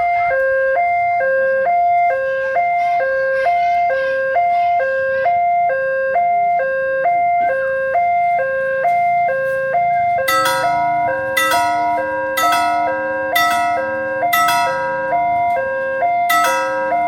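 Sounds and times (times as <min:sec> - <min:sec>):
two-tone electronic alarm: 0:05.3 - 0:17.0.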